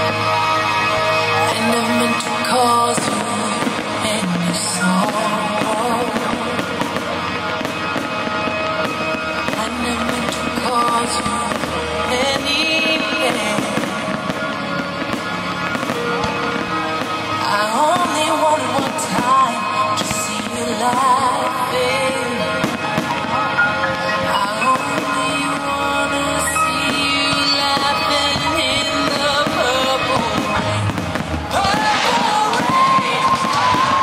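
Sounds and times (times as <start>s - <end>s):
fireworks bangs and crackles: 0.0s - 34.0s
pop music playing: 17.4s - 34.0s.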